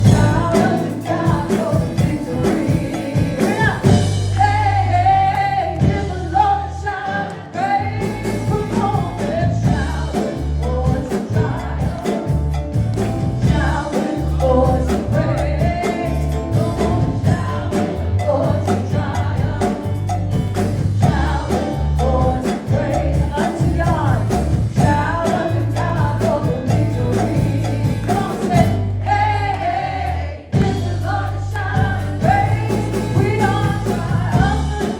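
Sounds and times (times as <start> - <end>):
bass: 0.0 - 34.9
drums: 0.0 - 34.9
lead singer: 0.0 - 34.9
cowbell: 8.1 - 28.6.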